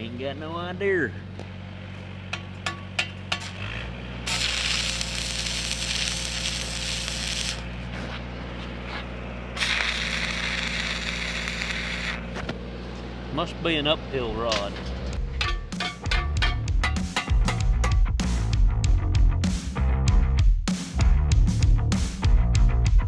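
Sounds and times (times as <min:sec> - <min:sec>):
welding machine engine drone: 0:01.9 - 0:13.1
welding arc crackling and sizzling: 0:03.1 - 0:07.9, 0:09.6 - 0:12.4.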